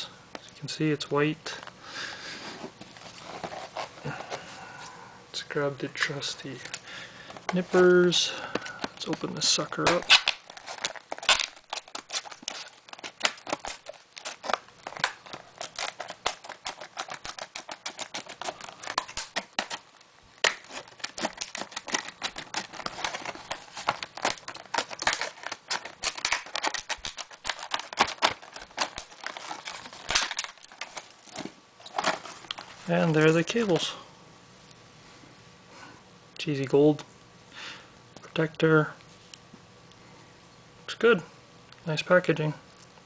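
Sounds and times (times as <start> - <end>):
packaging crinkling: 6.6 - 33.9
nippers snipping packaging: 7.4 - 19.8, 20.4 - 33.8.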